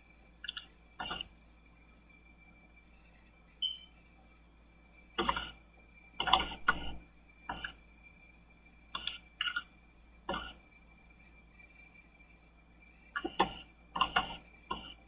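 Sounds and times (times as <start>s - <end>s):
keyboard and mouse clicks: 0.4s - 1.3s.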